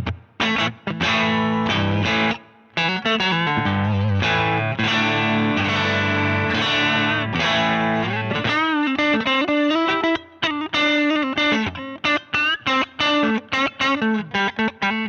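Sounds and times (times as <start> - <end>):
overdriven electric guitar chords: 0.0 - 15.0.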